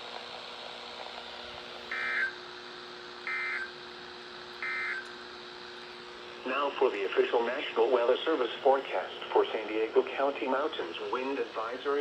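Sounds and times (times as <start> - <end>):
faint radio hum: 6.4 - 12.0.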